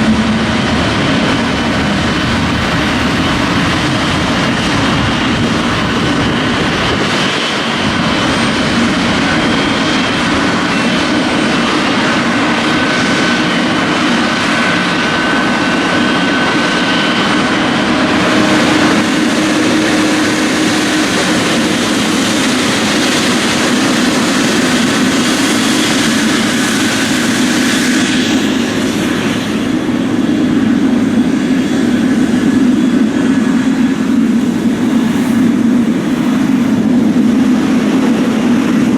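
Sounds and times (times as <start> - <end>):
jet engine whine: 0.0 - 38.9
jet engines rumbling: 0.0 - 38.9
high jet hiss: 1.4 - 7.4, 18.0 - 38.0.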